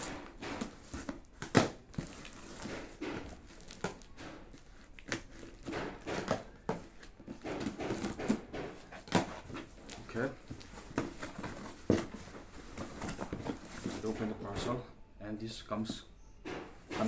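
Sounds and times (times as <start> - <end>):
plastic packaging crinkling: 0.0 - 8.2.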